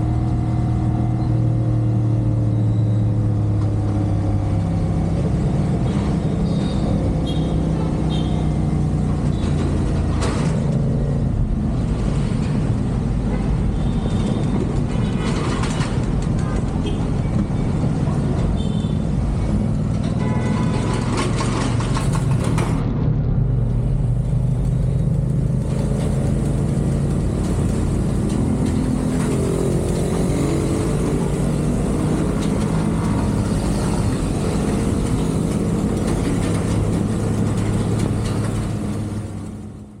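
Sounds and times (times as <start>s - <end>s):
wind and road noise: 0.0s - 40.0s
motorcycle engine running: 23.5s - 40.0s.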